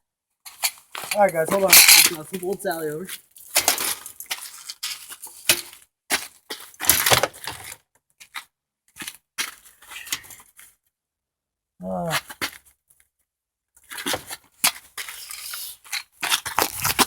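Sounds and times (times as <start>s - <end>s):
bicycle clattering and scraping: 3.4s - 7.7s.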